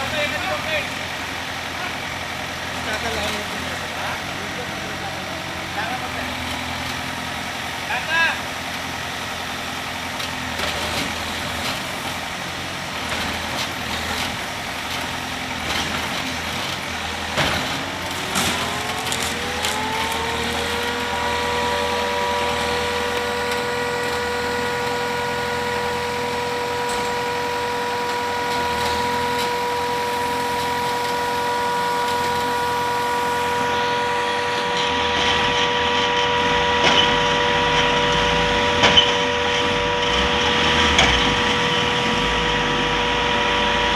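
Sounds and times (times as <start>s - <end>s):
diesel engine under load: 0.0s - 43.9s
high-pitched whine: 17.3s - 43.9s.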